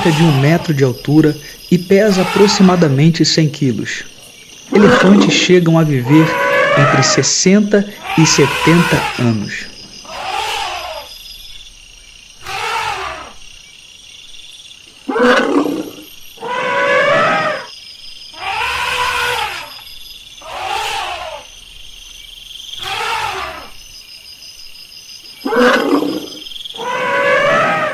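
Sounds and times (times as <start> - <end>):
elephant calling: 0.0 - 11.2, 12.4 - 13.5, 15.0 - 17.7, 18.3 - 21.8, 22.8 - 23.8, 25.4 - 27.9.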